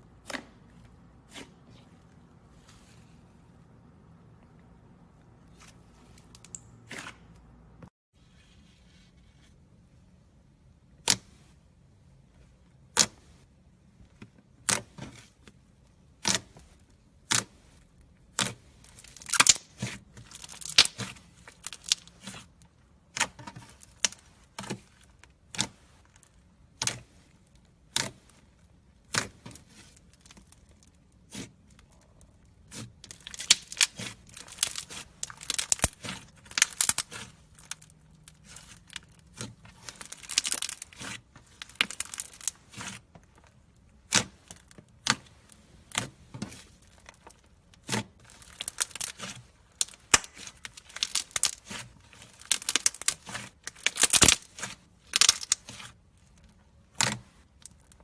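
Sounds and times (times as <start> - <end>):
slime crackling: 17.2 - 58.0.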